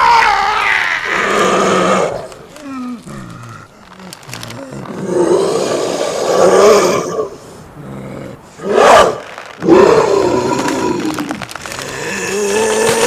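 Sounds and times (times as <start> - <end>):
loud roaring cry: 0.0 - 2.4, 8.6 - 11.4
bestial growls and roars: 0.0 - 13.0.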